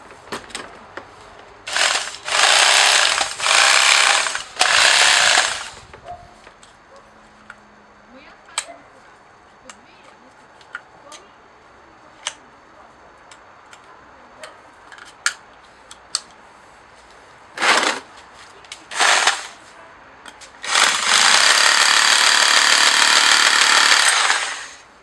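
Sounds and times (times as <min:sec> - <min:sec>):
rotary hammer motor running: 0:01.7 - 0:05.8, 0:18.9 - 0:19.5, 0:20.6 - 0:24.8.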